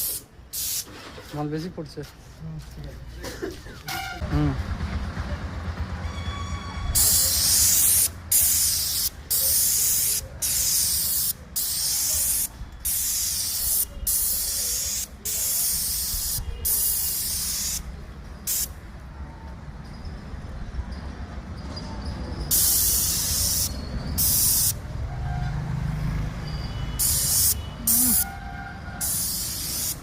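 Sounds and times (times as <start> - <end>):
paint spray gun hissing: 0.0 - 0.9, 7.0 - 17.9, 18.5 - 18.7, 22.5 - 24.8, 27.0 - 28.2, 29.0 - 30.0.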